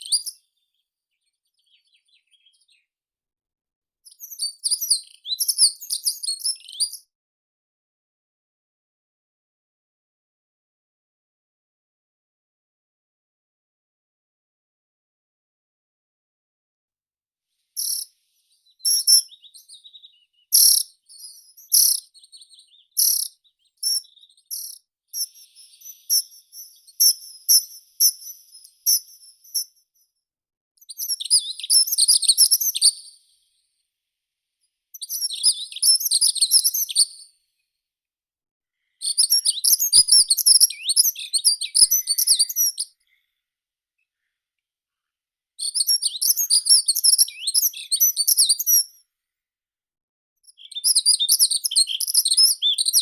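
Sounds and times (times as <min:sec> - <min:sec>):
songbird high chirps: 0:00.0 - 0:02.9, 0:04.1 - 0:07.1, 0:17.8 - 0:30.0, 0:30.8 - 0:33.0, 0:35.0 - 0:37.2, 0:38.8 - 0:43.2, 0:45.6 - 0:49.0, 0:50.4 - 0:53.0
songbird twittering song: 0:00.0 - 0:02.9, 0:04.1 - 0:07.1, 0:17.8 - 0:30.0, 0:30.8 - 0:33.1, 0:35.0 - 0:37.3, 0:38.8 - 0:43.4, 0:45.6 - 0:49.0, 0:50.5 - 0:53.0.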